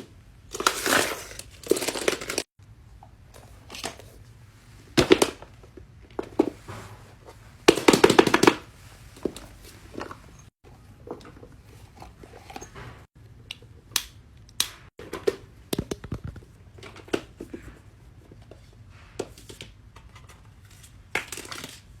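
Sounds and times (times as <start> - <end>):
plastic toys clicking and clattering: 0.5 - 2.5.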